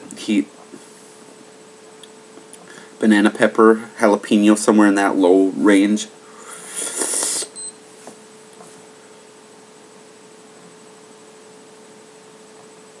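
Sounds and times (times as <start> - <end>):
electrical hum: 0.0 - 13.0
faint hiss: 2.0 - 7.6.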